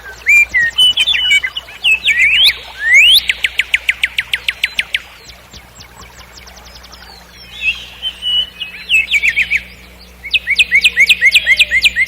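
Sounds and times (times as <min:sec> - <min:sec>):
nightingale singing: 0:00.0 - 0:12.0.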